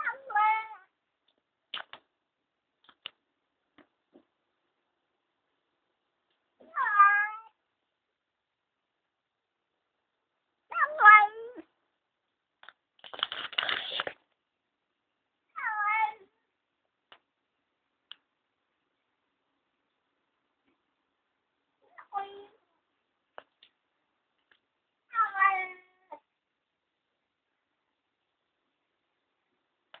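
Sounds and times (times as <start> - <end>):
cat meowing: 6.6 - 7.6, 15.6 - 16.3.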